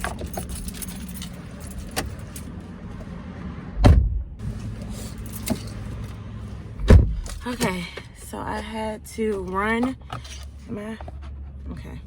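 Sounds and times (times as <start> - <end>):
car door shutting: 3.8 - 4.2, 6.8 - 7.8.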